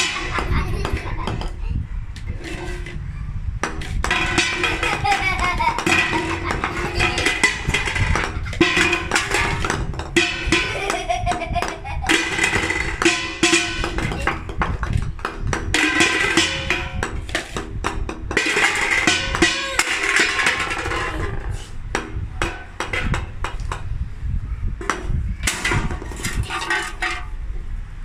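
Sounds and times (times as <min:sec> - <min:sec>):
golf balls clicking and knocking: 0:00.0 - 0:24.0
pitched ringing: 0:02.6 - 0:14.8, 0:15.7 - 0:21.5.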